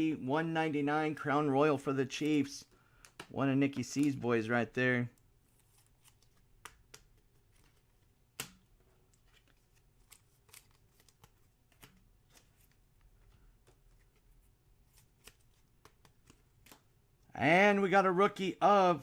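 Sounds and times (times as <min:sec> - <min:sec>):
trading cards flipped through: 0:05.4 - 0:17.0.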